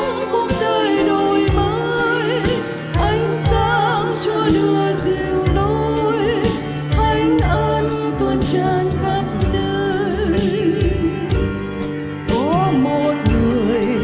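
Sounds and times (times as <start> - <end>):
choir singing a hymn: 0.0 - 6.6
instrumental accompaniment with beat: 0.0 - 14.0.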